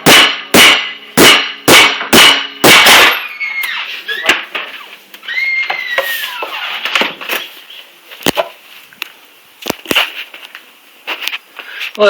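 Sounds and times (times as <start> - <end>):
hammer blows on metal: 0.0 - 3.3
falling squeal: 3.2 - 6.9.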